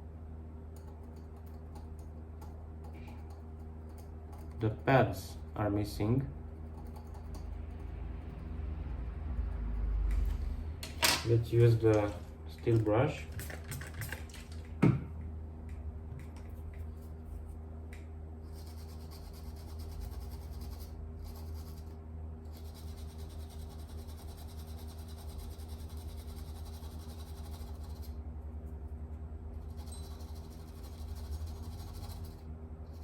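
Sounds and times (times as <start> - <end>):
steady low hum: 0.0 - 33.0
wire brush scratching circuit board: 18.5 - 28.2, 29.6 - 33.0.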